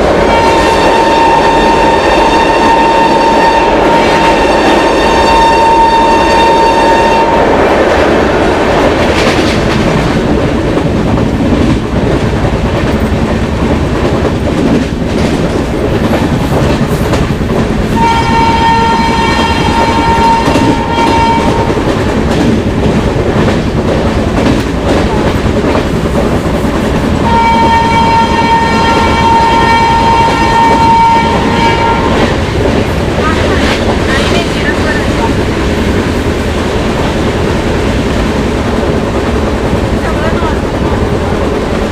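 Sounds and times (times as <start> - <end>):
train running noise and rail clatter: 0.0 - 41.9
locomotive horn blasts: 0.2 - 7.6, 17.9 - 21.8, 27.2 - 32.4.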